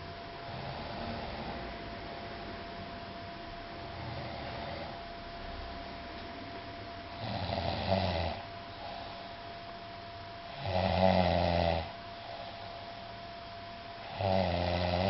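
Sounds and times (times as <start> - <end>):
person snoring loudly: 0.5 - 1.7, 3.9 - 5.0, 7.1 - 9.2, 10.5 - 12.6, 14.0 - 15.0.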